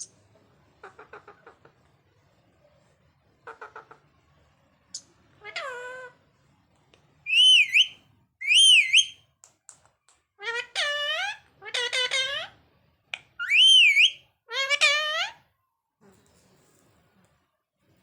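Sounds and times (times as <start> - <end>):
parrot chirp: 7.3 - 9.2, 10.4 - 12.6, 13.2 - 15.4
parrot whistling: 7.3 - 9.2, 13.4 - 15.3.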